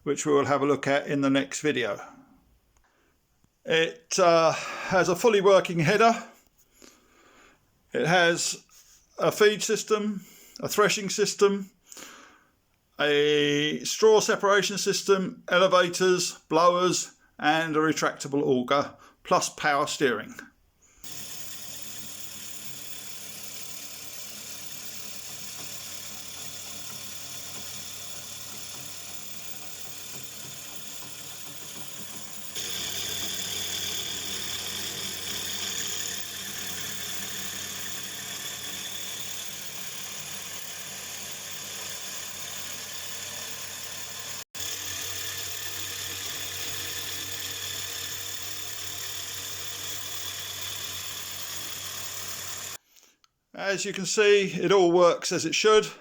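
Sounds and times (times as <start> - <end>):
model motor whining: 21.0 - 52.8.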